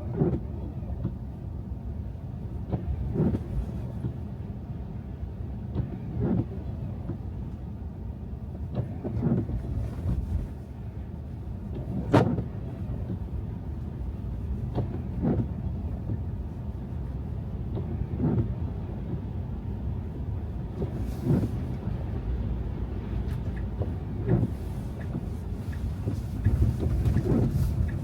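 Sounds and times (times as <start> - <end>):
road and tyre rumble: 0.0 - 28.0
car thumps: 23.2 - 28.0.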